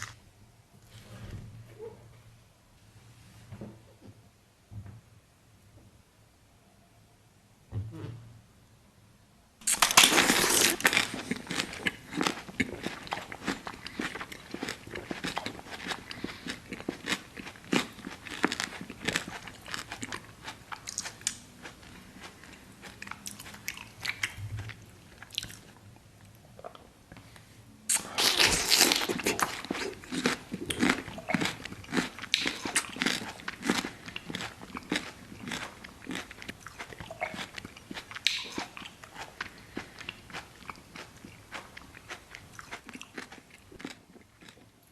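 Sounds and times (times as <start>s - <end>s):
crunchy bites and chewing: 9.6s - 25.8s, 27.9s - 44.6s.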